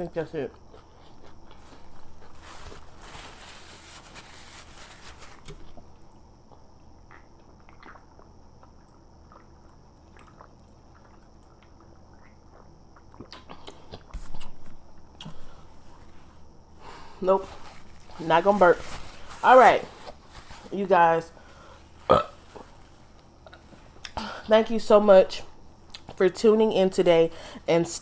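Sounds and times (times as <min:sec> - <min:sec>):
soft chewing mouth noises: 0:00.5 - 0:02.8, 0:05.5 - 0:16.4, 0:21.6 - 0:24.2, 0:25.8 - 0:26.2.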